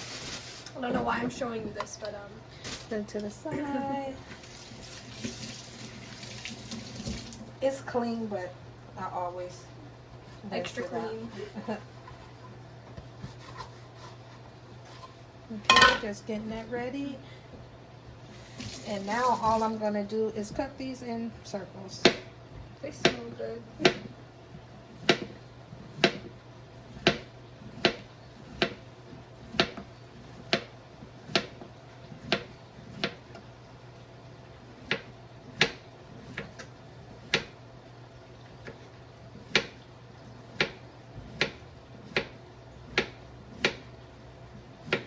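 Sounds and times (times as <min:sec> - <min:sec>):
knife slicing cucumber: 0:24.9 - 0:28.8, 0:29.4 - 0:33.2, 0:34.8 - 0:37.6, 0:40.4 - 0:43.9.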